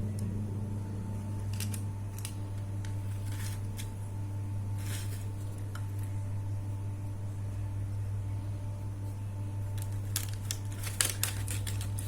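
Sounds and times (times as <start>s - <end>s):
low electrical hum: 0.0s - 12.0s
plastic parts and packaging rustling: 1.4s - 6.2s, 9.7s - 12.0s.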